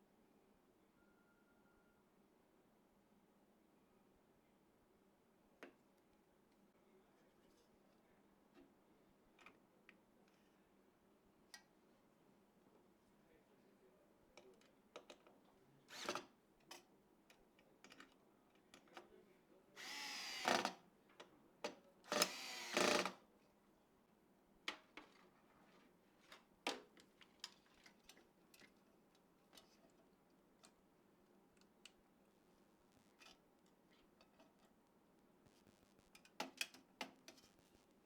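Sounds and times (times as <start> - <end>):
small tool buzzing: 19.8 - 20.8, 22.1 - 23.2.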